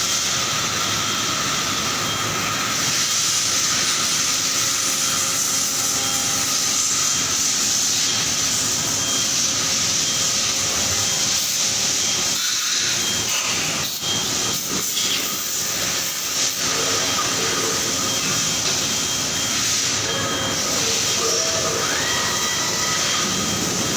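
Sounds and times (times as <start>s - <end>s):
factory machinery hiss: 0.0s - 23.9s.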